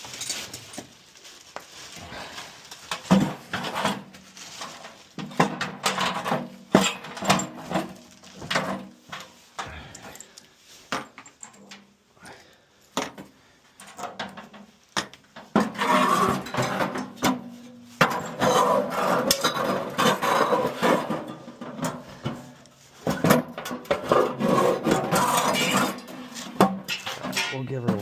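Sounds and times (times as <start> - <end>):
metal scraping and rattling: 2.3 - 9.6, 13.9 - 28.0.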